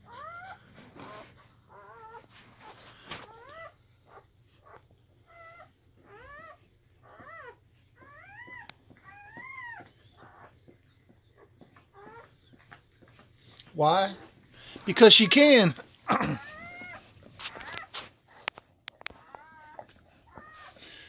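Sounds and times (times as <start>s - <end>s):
newborn puppies squealing: 0.0s - 10.7s, 11.4s - 12.8s, 14.0s - 18.4s, 19.1s - 21.0s.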